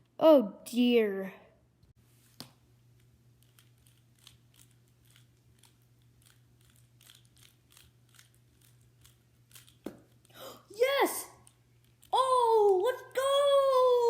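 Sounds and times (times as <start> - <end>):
puzzle cube layers clicking: 3.4 - 10.3.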